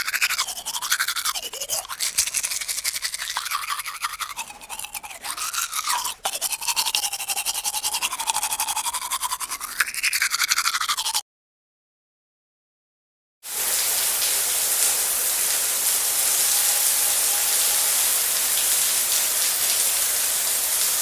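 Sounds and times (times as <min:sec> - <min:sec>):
toothbrush scrubbing teeth: 0:00.0 - 0:11.2.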